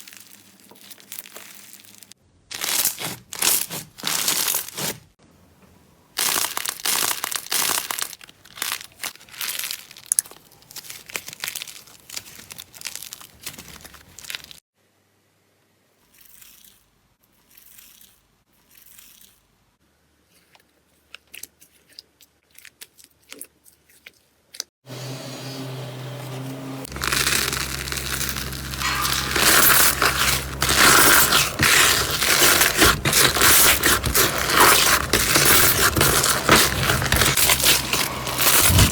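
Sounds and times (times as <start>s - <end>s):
slime squeezed by hand crackling: 26.9s - 38.9s.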